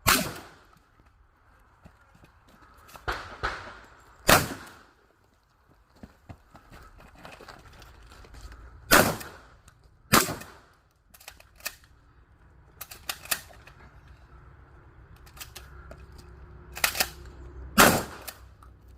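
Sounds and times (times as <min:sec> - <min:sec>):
loud shotgun shots: 0:00.0 - 0:00.6, 0:03.0 - 0:04.9, 0:08.9 - 0:09.5, 0:10.1 - 0:10.7, 0:17.8 - 0:18.3.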